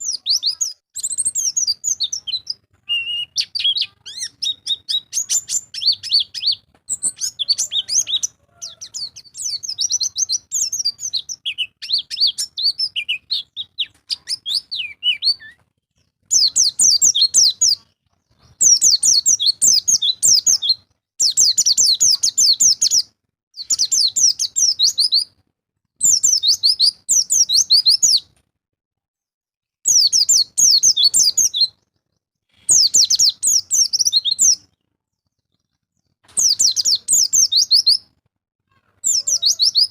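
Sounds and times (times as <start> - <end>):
bird twittering and trilling: 0.0 - 25.4, 26.0 - 28.3, 29.9 - 38.1, 38.7 - 39.9.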